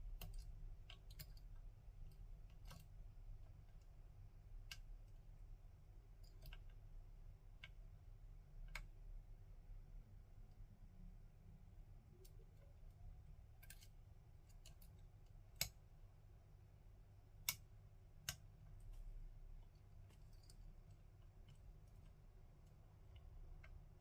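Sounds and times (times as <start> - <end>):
small metal clicks: 0.0 - 3.9, 6.1 - 6.9, 12.1 - 15.8, 17.4 - 24.0.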